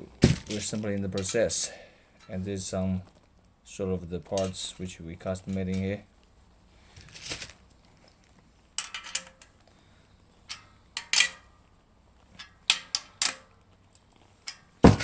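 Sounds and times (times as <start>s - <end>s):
rustle: 0.0s - 15.0s
sharp knocks of metal parts: 0.1s - 1.6s, 4.3s - 4.7s, 8.8s - 9.6s, 10.4s - 11.6s, 12.3s - 13.6s, 14.4s - 15.0s
metal parts clinking: 0.4s - 2.4s, 4.3s - 4.8s, 8.8s - 9.6s, 10.4s - 11.6s, 12.2s - 15.0s.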